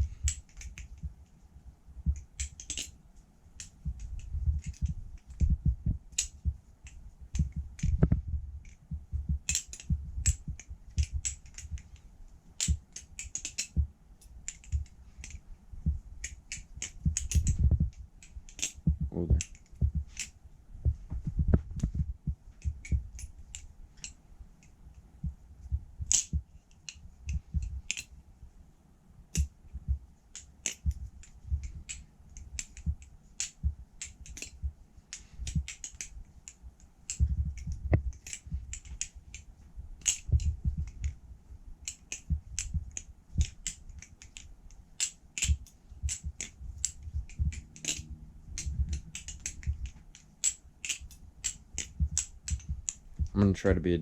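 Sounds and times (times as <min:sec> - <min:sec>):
butterfly knife clacking: 0:41.8 - 0:53.0.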